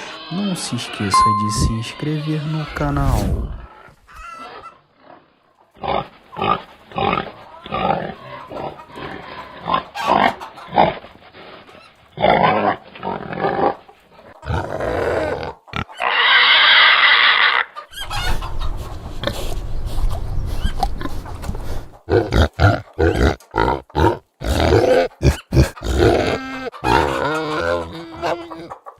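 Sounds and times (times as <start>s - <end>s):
pigs grunting: 3.3s - 28.9s
pig squealing: 3.6s - 11.0s, 14.4s - 18.6s, 22.1s - 28.8s.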